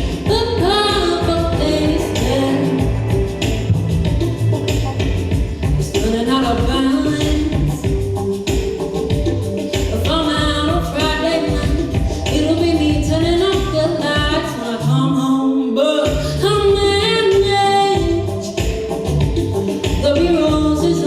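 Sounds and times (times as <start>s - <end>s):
live band playing: 0.0s - 14.8s, 16.2s - 21.0s
lead singer: 0.0s - 19.0s
backing vocal harmonies: 0.0s - 21.0s.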